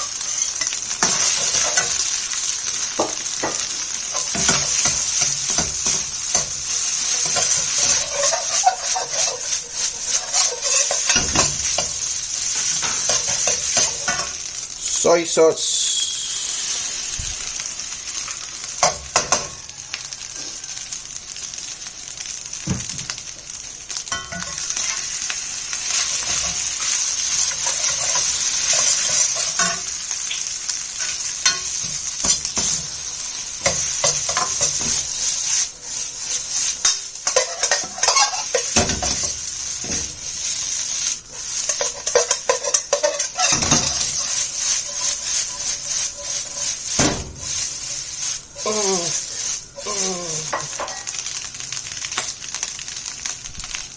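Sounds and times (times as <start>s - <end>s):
rice sizzling in a pan: 0.0s - 53.9s
utensil scraping and knocking pan: 7.2s - 12.0s, 36.3s - 40.7s, 41.4s - 49.6s.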